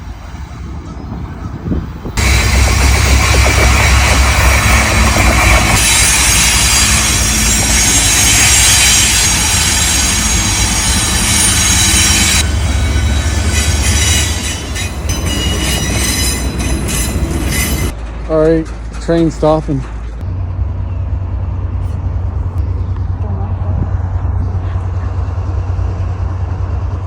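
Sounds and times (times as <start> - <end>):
train wheels rumbling on rails: 0.0 - 27.0
metallic wheel squeal: 5.4 - 19.6.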